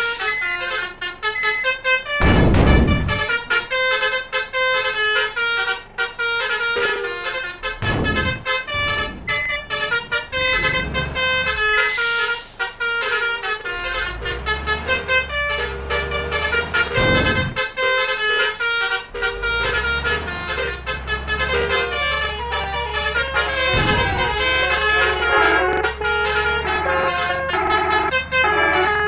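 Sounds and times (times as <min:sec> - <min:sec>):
engine rumble: 0:00.0 - 0:29.0
musical air horns: 0:00.0 - 0:29.0
vehicles passing: 0:00.0 - 0:29.0.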